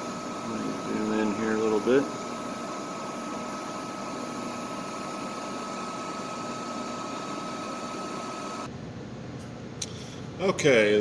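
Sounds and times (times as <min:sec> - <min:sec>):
milling machine running: 0:00.0 - 0:08.7.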